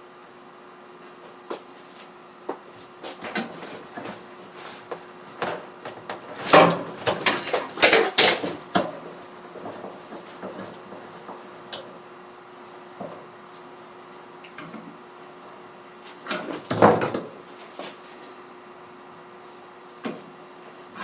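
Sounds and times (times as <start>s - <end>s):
tools clattering: 7.2s - 8.6s.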